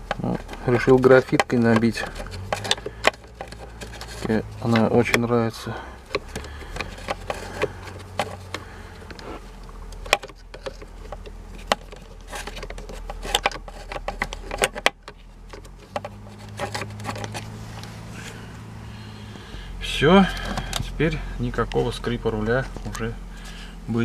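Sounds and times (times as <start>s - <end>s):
clicks and knocks on plastic parts: 0.0s - 5.3s, 6.0s - 17.4s
low steady hum: 0.0s - 24.0s.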